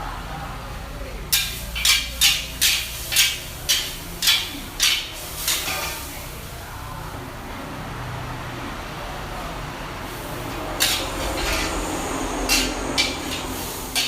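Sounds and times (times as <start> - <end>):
kitchen utensil striking: 1.3 - 6.0, 10.8 - 11.7, 12.5 - 14.0.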